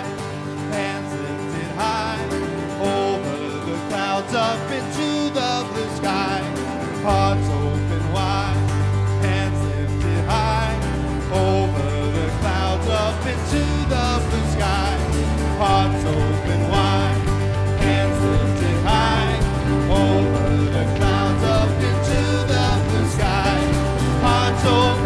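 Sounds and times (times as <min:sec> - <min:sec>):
country music instruments: 0:00.0 - 0:25.0
person singing: 0:00.0 - 0:25.0
deep bass line: 0:07.1 - 0:25.0.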